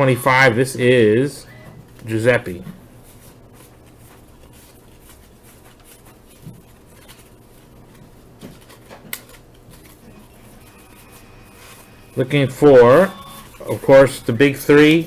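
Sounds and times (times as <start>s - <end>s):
rustling of wax wrapper and cards: 3.0s - 15.0s.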